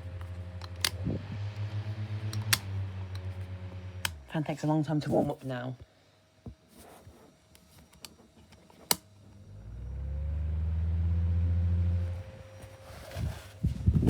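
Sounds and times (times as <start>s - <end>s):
faint rising motor whine: 0.0s - 5.6s, 9.2s - 14.0s
desk fan motor humming: 0.0s - 5.8s, 7.2s - 14.0s.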